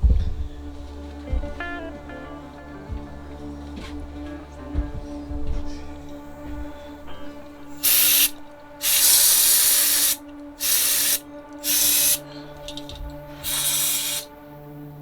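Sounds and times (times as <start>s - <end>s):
aerosol spray hissing: 7.8s - 14.4s.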